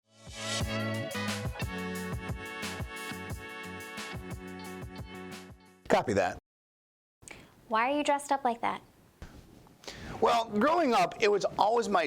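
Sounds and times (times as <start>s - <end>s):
music with chords and beat: 0.2s - 5.8s.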